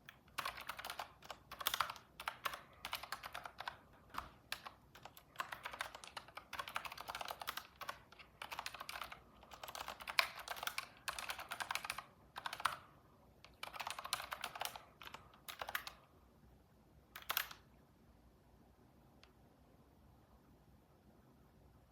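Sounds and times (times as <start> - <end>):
computer keyboard typing: 0.0 - 16.1, 17.1 - 17.6.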